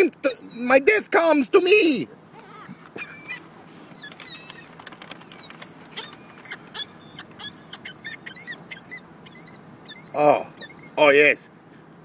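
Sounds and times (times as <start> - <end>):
flock of birds calling: 2.2 - 11.3.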